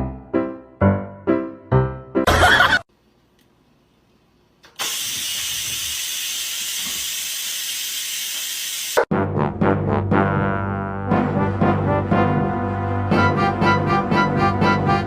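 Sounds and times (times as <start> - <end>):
piano music: 0.0 - 2.3, 10.8 - 15.0
loud steady hiss: 4.7 - 9.0.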